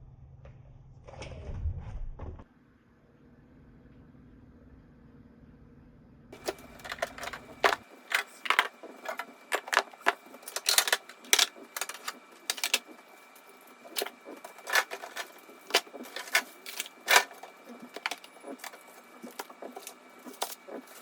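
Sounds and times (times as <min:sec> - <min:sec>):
small items clicking and knocking: 0:06.4 - 0:13.2, 0:13.8 - 0:21.0.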